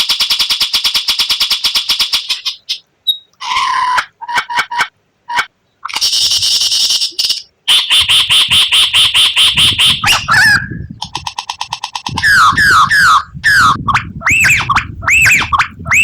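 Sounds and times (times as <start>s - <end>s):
bird singing varied song: 1.7s - 3.7s, 5.6s - 16.0s.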